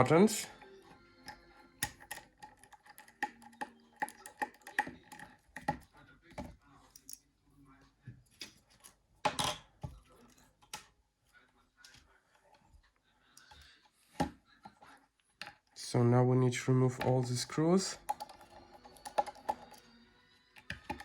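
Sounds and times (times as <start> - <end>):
plastic pieces clicking and tapping: 1.3 - 7.2, 17.9 - 19.9, 20.6 - 21.0.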